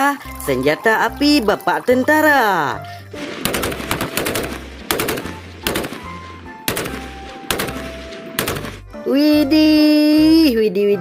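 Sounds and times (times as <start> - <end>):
background music with low beat: 0.0 - 10.4
machine-gun bursts: 3.4 - 8.8.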